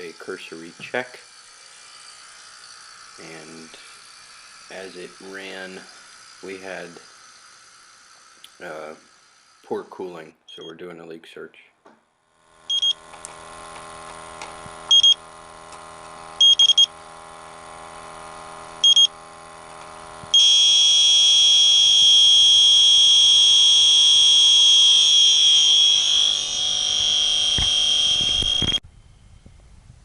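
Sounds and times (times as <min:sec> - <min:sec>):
steady hum: 0:00.0 - 0:10.2, 0:12.5 - 0:30.0
continuous high alarm tone: 0:12.6 - 0:13.1, 0:14.9 - 0:15.3, 0:16.4 - 0:17.0, 0:18.8 - 0:19.2, 0:20.3 - 0:28.8
leak detector short high beeps: 0:12.7 - 0:13.0, 0:14.9 - 0:15.2, 0:16.4 - 0:16.9, 0:18.8 - 0:19.2, 0:20.3 - 0:28.8.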